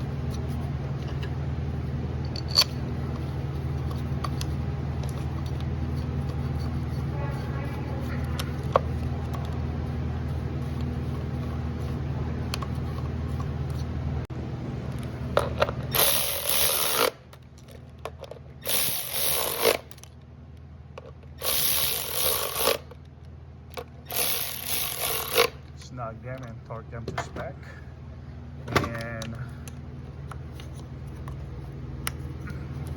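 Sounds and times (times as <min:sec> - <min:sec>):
steady low hum: 0:00.0 - 0:32.9
hand ratchet clicking: 0:15.9 - 0:17.2, 0:18.6 - 0:20.1, 0:21.4 - 0:23.0, 0:24.0 - 0:25.6.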